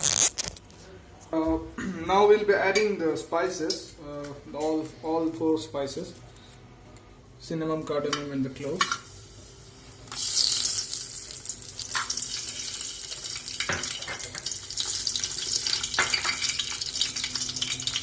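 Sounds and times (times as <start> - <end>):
spices sizzling in hot oil: 8.8 - 18.0.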